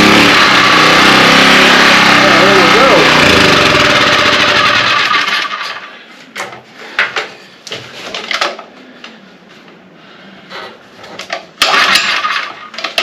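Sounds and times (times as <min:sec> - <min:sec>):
small gasoline engine running: 0:00.0 - 0:05.9, 0:11.7 - 0:12.5.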